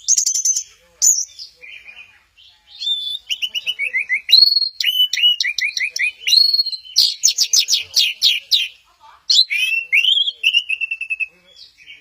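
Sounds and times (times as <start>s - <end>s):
thrush singing whistled notes: 0.0s - 8.7s, 9.3s - 12.0s.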